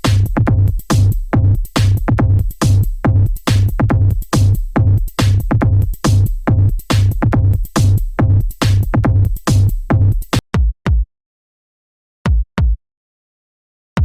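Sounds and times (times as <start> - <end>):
heavy bass hits: 0.0 - 10.3
electronic dance music: 0.0 - 10.4.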